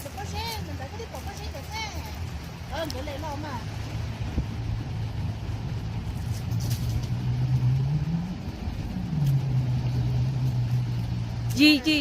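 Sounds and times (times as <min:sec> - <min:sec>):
steady low rumble: 0:00.0 - 0:12.0
truck engine revving under load: 0:02.2 - 0:11.5.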